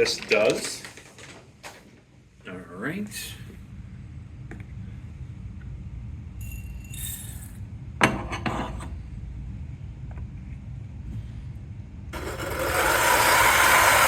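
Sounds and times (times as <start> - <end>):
coffee beans rattling: 6.4 - 7.6.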